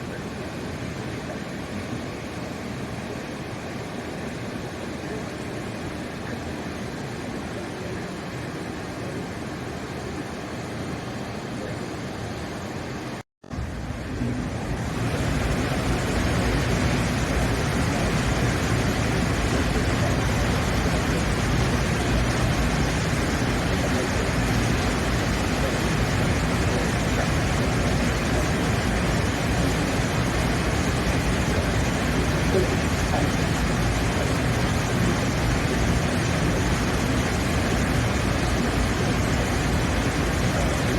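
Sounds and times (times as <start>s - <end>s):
train rumbling: 13.4s - 40.9s.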